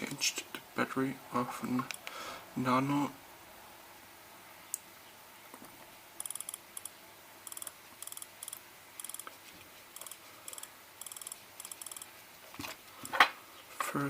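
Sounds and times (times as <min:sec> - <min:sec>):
click wheel ticking: 0:06.2 - 0:09.3, 0:10.0 - 0:12.1.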